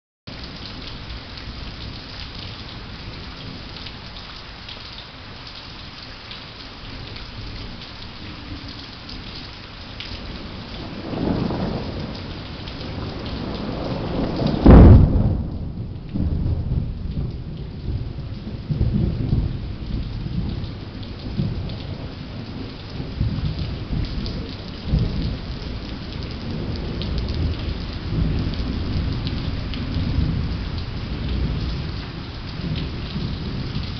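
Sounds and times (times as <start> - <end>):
steady rain: 0.3 - 33.9
rolling thunder rumbles: 10.1 - 33.9
sharp thunderclap: 10.8 - 20.6.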